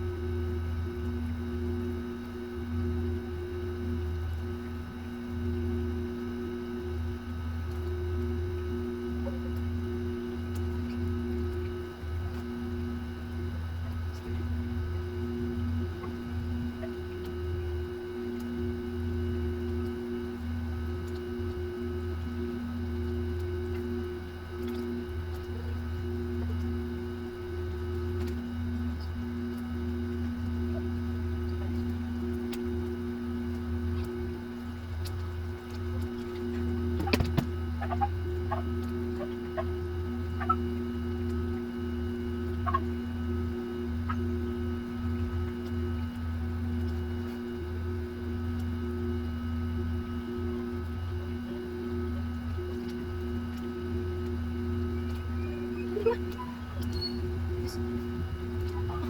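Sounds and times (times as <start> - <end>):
electrical hum: 0.0 - 59.0
held tones: 14.6 - 59.0.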